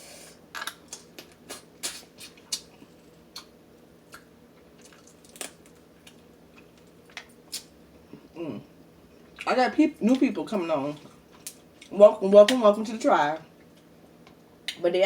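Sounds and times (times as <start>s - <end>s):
person chewing crab: 4.1s - 7.7s.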